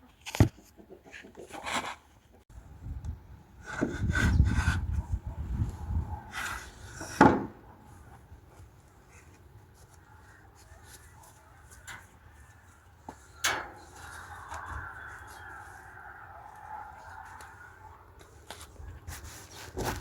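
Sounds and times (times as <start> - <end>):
rubbing and scraping: 13.1 - 20.0.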